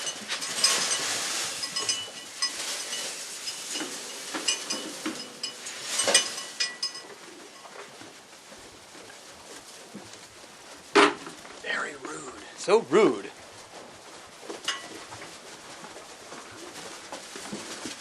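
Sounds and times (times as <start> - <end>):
sheep bell clinking: 0.0 - 8.0, 14.7 - 15.0.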